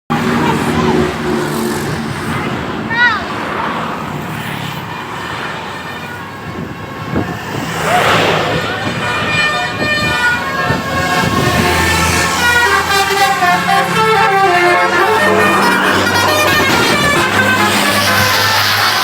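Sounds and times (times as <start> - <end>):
bus engine running: 0.1 - 19.0
musical bus horn playing tune: 8.8 - 19.0.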